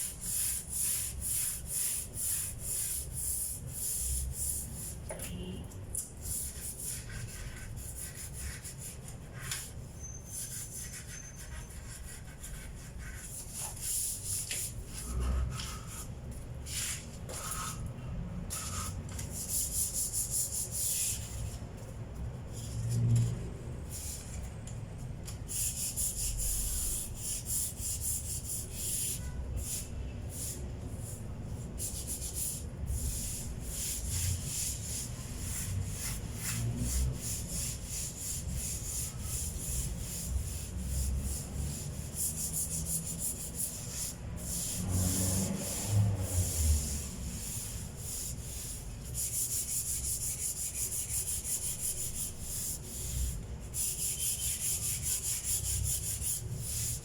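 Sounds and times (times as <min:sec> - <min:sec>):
sandpaper scraping wood: 0:00.0 - 0:05.0, 0:06.3 - 0:09.7, 0:10.4 - 0:16.1, 0:18.5 - 0:21.6, 0:31.8 - 0:57.0.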